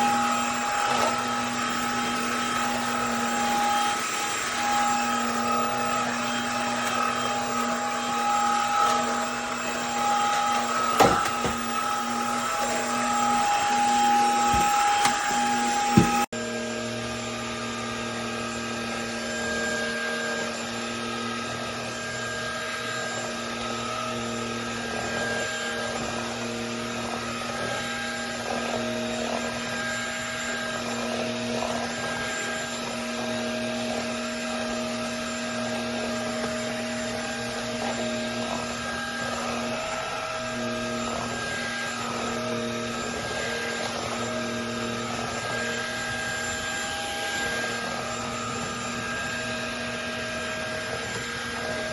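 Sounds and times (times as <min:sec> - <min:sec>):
vacuum cleaner running: 0:00.0 - 0:51.9.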